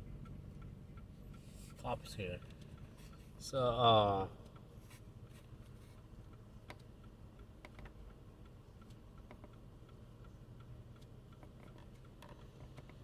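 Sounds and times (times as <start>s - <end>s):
faint ticks and clicks: 6.2s - 13.0s.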